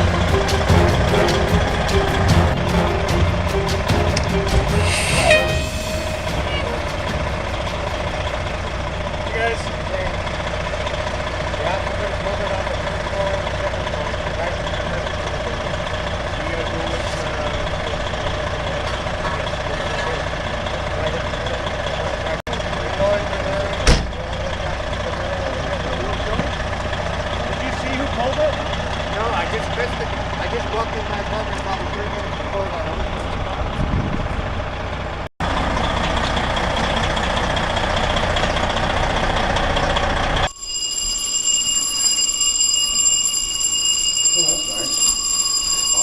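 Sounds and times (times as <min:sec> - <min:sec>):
heavy vehicle engine idling: 0:00.0 - 0:40.5
fire alarm high-pitched tone: 0:04.8 - 0:08.4, 0:40.4 - 0:46.0.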